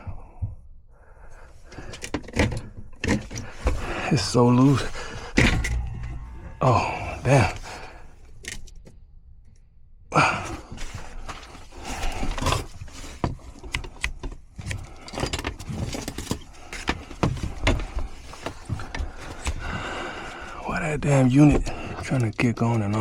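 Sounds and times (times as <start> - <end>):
tools clicking and knocking: 12.3 - 19.6.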